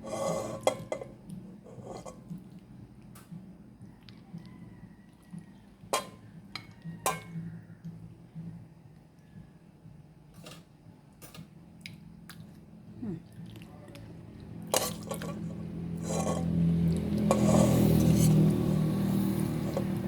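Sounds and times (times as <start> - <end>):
dishes and utensils clinking: 0.1 - 2.3, 5.9 - 7.4, 14.7 - 18.6.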